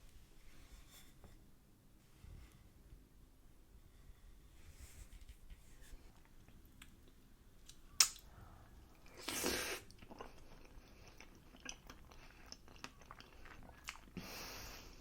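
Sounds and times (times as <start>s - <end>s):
soft chewing: 5.1s - 14.4s
mouth click: 7.7s - 8.2s.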